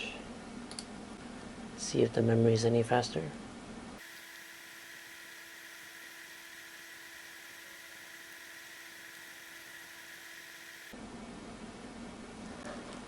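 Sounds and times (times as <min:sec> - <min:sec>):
faint whir and hiss with tones: 0:03.3 - 0:13.0.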